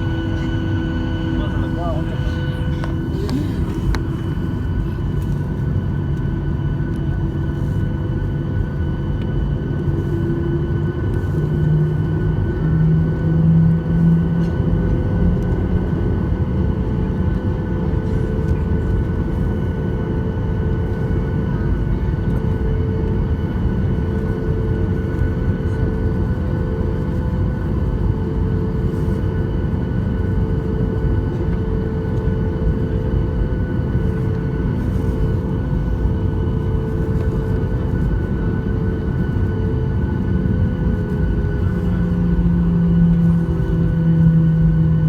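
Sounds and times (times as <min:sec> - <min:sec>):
whining engine tones: 0:00.0 - 0:05.2
airplane cabin engine rumble: 0:00.0 - 0:45.0.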